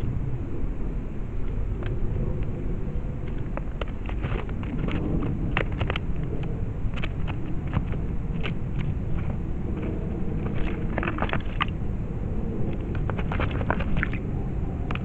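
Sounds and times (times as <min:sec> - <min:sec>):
wind rumbling on microphone: 0:00.0 - 0:15.0.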